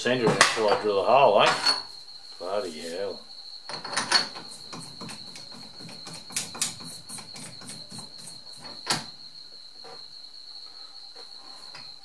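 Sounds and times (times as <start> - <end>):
insect trill: 0.0 - 12.0
metal tooling clicks and knocks: 3.7 - 9.0.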